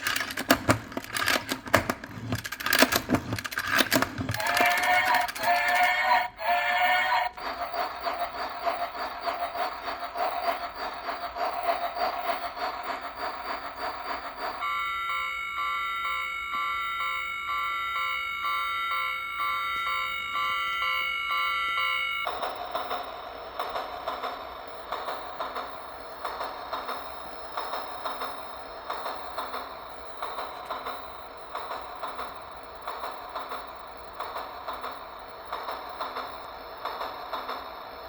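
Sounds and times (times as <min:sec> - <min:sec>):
spinning top chugging: 0:00.0 - 0:06.0
spinning top whistling hum: 0:00.0 - 0:38.0.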